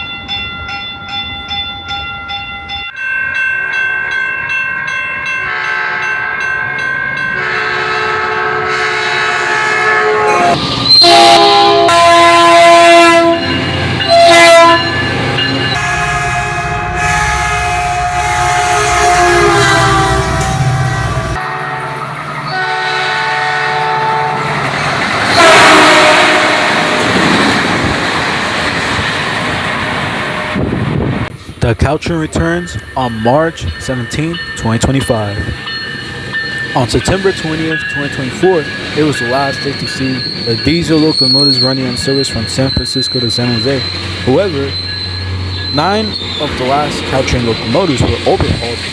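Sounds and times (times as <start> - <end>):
locomotive horn chord: 5.5 - 6.4, 7.4 - 24.6, 25.3 - 27.3, 36.6 - 44.8, 45.7 - 48.7.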